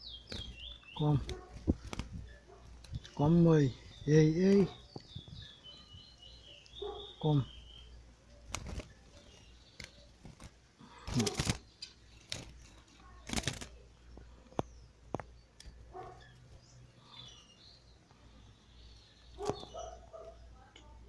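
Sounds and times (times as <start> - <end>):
finch chirping: 0.0 - 20.7
rustling: 0.3 - 3.8, 8.3 - 13.8.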